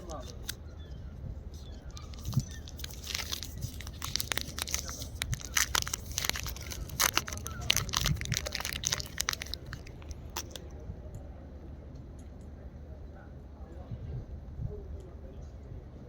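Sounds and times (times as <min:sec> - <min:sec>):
plastic wrapper crinkling and tearing: 0:00.0 - 0:00.6, 0:01.6 - 0:10.6.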